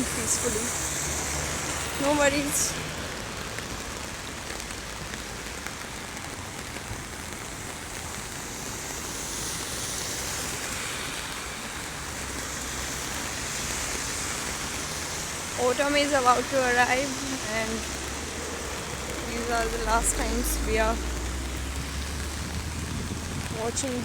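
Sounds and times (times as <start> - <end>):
road traffic rumble: 0.0 - 24.0
steady rain falling: 0.0 - 24.0.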